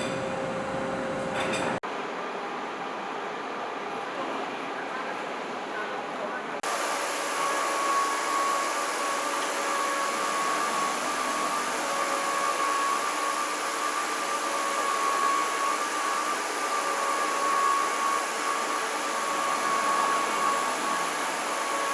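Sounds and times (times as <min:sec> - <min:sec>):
machine tool with high whine: 0:06.6 - 0:21.9.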